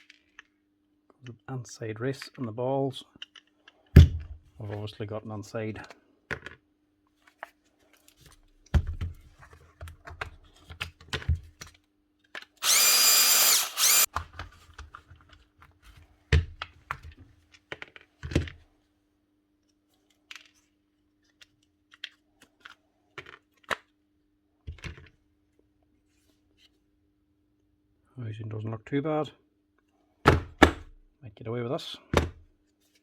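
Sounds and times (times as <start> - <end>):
power tool whine: 12.6 - 14.1.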